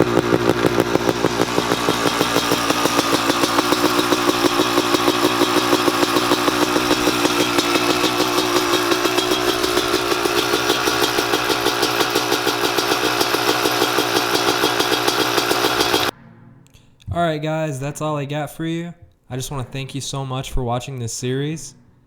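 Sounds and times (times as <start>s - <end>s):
dirt bike engine idling: 0.0s - 16.1s.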